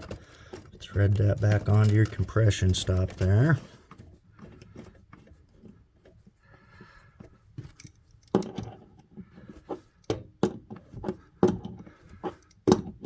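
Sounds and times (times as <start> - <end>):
coupling nut clicking and knocking: 7.2 - 13.0.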